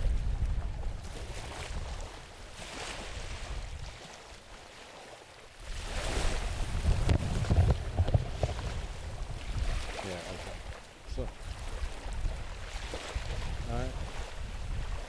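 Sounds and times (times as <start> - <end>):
wind buffeting microphone: 0.0 - 4.3, 5.6 - 15.0
small waves breaking on shore: 0.0 - 15.0.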